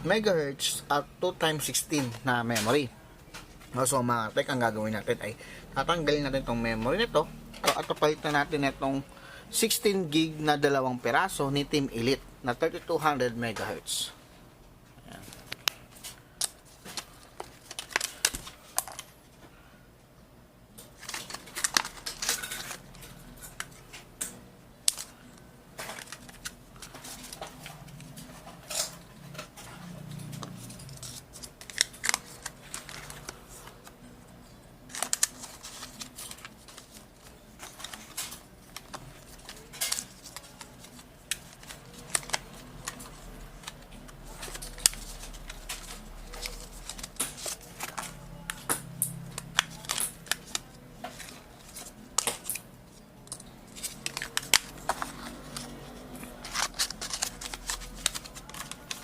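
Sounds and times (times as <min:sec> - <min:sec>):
hands handling small parts: 0:53.2 - 0:59.0.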